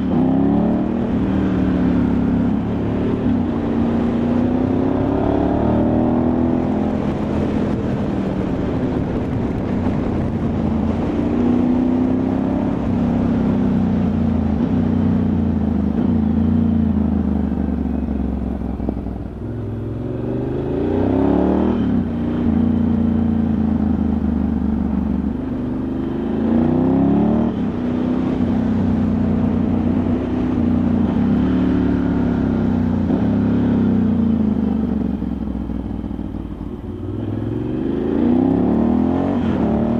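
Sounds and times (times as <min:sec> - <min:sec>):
wind noise: 0:00.0 - 0:17.3
motorcycle engine revving: 0:00.0 - 0:39.9.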